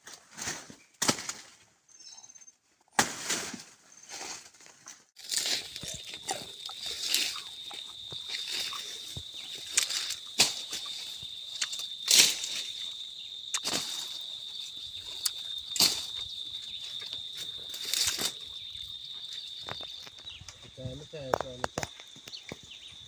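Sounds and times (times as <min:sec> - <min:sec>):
leaves rustling and crackling: 0:03.1 - 0:22.4
high-pitched insect drone: 0:05.2 - 0:23.0.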